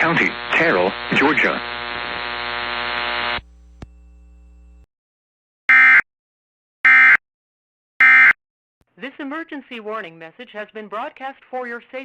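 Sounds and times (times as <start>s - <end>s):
steady electrical buzz: 0.2s - 4.8s.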